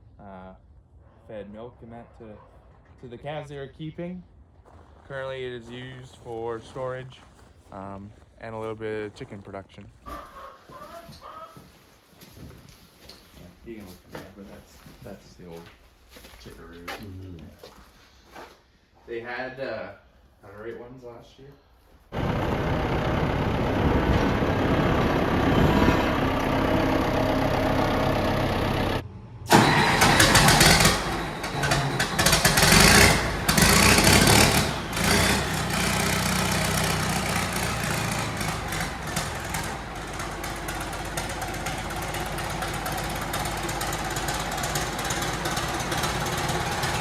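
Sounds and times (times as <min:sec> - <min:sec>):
vehicle engine running: 0:22.1 - 0:47.0
rough engine noise with clatter: 0:22.2 - 0:47.0.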